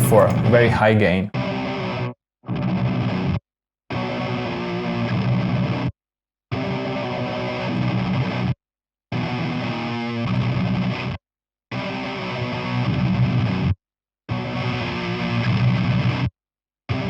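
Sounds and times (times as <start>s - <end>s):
distorted electric guitar rhythm: 0.0s - 2.0s.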